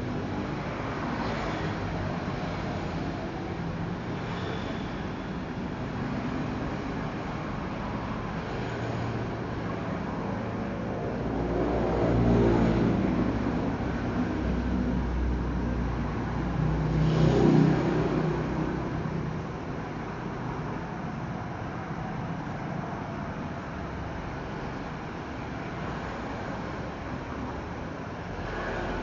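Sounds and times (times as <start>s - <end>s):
vehicle engine passing by: 16.8s - 18.9s.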